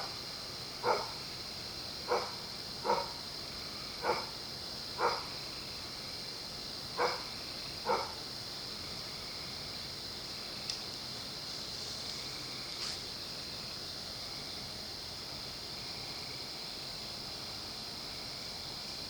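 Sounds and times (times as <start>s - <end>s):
high-pitched hiss: 0.0s - 19.0s
dog barking: 0.8s - 1.2s, 2.1s - 3.2s, 4.0s - 4.3s, 5.0s - 5.3s, 7.0s - 8.2s.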